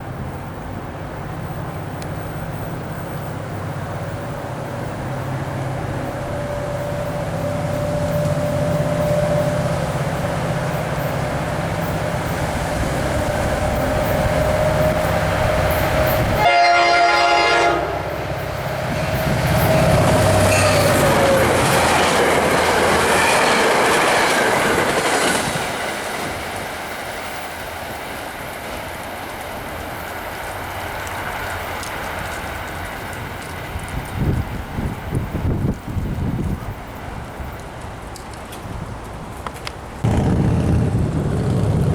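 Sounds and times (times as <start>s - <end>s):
diesel train passing: 0.0s - 41.9s
train horn blast: 6.0s - 21.8s
train wheel clatter: 18.2s - 41.9s.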